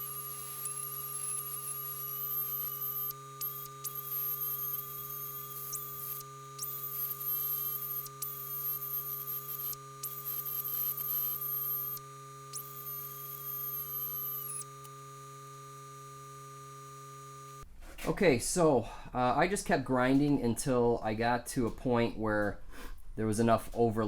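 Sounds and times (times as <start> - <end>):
steady hum: 0.0 - 15.7
power grinder whining on steel: 0.0 - 17.6.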